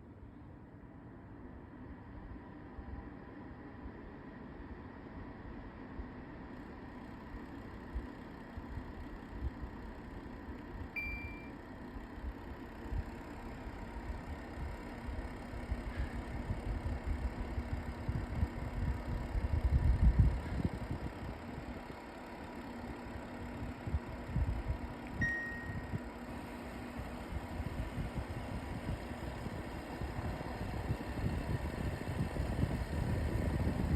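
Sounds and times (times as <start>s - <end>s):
air purifier fan humming: 3.7s - 33.9s
short electronic beeps: 11.0s - 11.5s, 25.2s - 25.9s
low vibration rumble: 25.2s - 26.1s.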